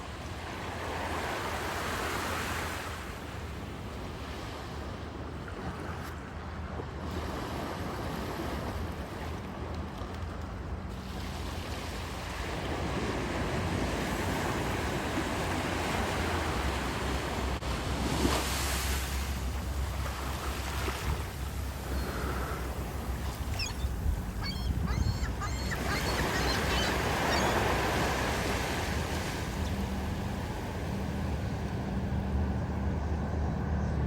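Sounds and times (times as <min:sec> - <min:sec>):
ocean surf breaking: 0:11.8 - 0:32.9
wind buffeting microphone: 0:21.0 - 0:34.0.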